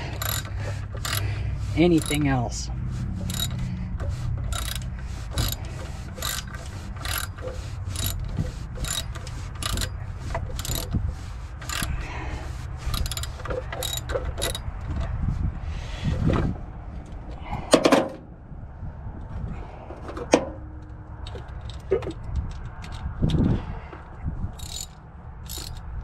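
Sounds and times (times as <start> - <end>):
ratchet wrench clicking: 0.0 - 2.4, 3.2 - 11.0, 11.6 - 15.1, 24.6 - 26.0.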